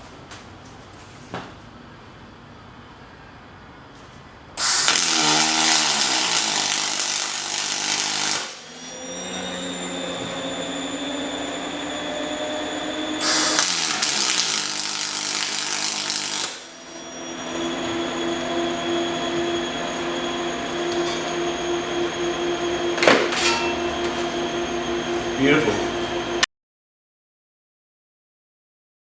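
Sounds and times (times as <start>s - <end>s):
welding arc crackling: 4.6s - 8.8s, 13.2s - 21.8s
machine hum with fixed tones: 5.0s - 26.5s.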